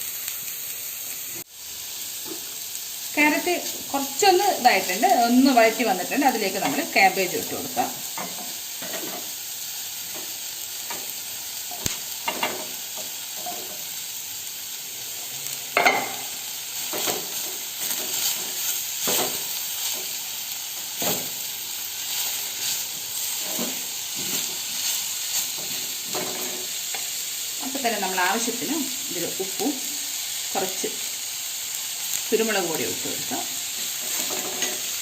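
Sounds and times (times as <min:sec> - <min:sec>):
vegetables sizzling in oil: 0:00.0 - 0:35.0
spatula scraping a pan: 0:15.8 - 0:21.4, 0:22.0 - 0:27.2, 0:33.8 - 0:35.0.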